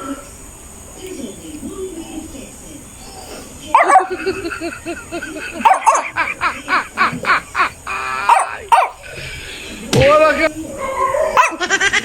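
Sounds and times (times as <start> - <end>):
barking and yipping: 3.7 - 4.6, 5.3 - 6.8, 7.6 - 9.2, 10.7 - 12.0.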